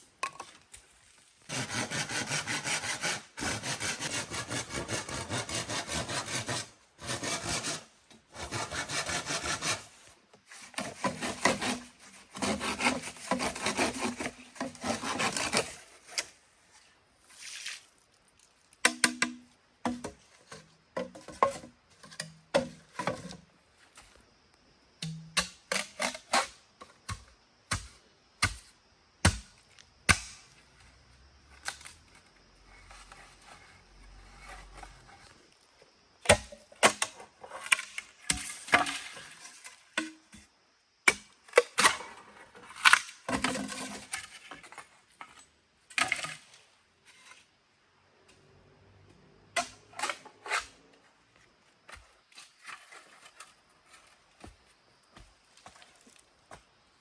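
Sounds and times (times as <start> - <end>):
sharp knocks and cracks: 30.1 - 30.4.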